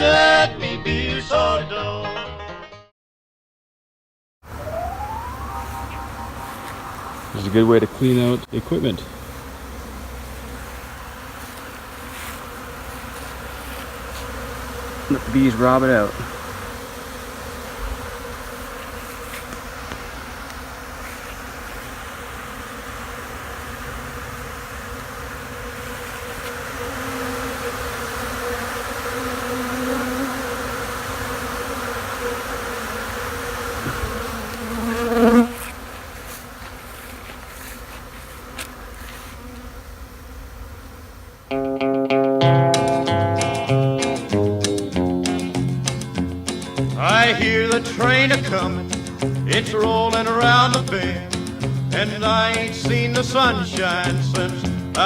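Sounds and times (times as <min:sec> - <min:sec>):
honeybees buzzing: 0:04.5 - 0:41.9, 0:42.7 - 0:55.0
single bee buzzing close: 0:04.8 - 0:08.4, 0:09.0 - 0:41.6.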